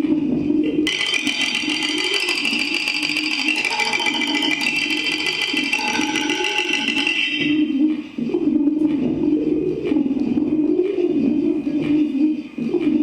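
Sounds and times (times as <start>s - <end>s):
low wavering bending tone: 0.6s - 10.6s
high buzzing rattle: 0.9s - 7.7s.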